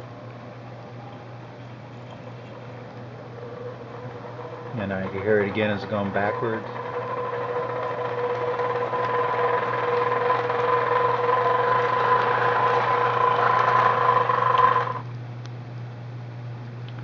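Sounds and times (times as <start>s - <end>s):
gears grinding rattle: 2.0s - 15.0s
model locomotive motor whining: 3.1s - 15.0s.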